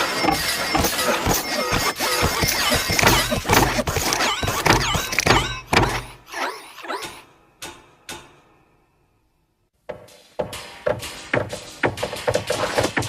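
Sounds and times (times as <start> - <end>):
desk lamp squeaks and thumps: 0.0 - 6.2.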